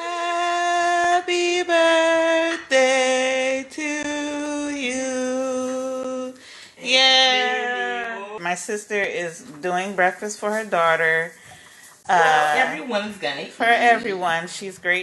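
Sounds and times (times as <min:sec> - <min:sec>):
person singing long notes: 0:00.0 - 0:08.4.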